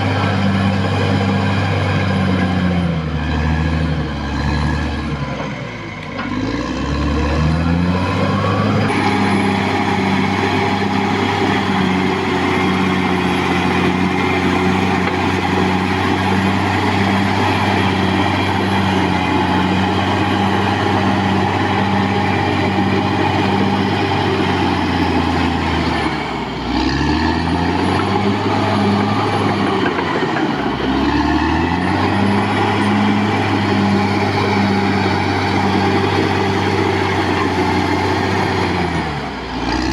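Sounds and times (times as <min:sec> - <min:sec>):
bulldozer diesel engine under load: 0:00.0 - 0:39.9.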